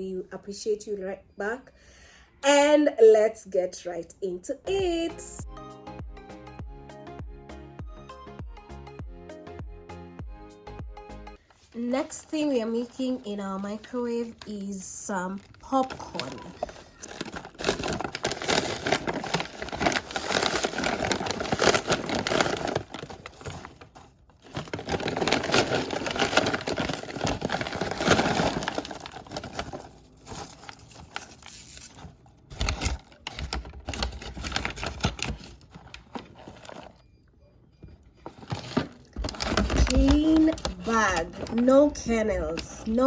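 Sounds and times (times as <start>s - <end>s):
bag rustling and crinkling: 11.4s - 37.0s, 38.2s - 43.0s.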